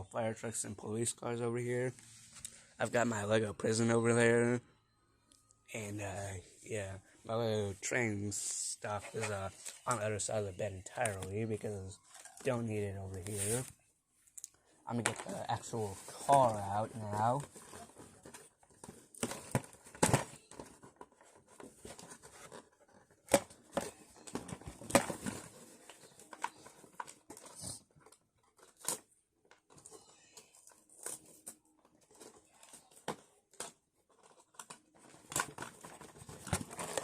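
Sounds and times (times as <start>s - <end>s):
packaging rustling and tearing: 15.0s - 37.0s.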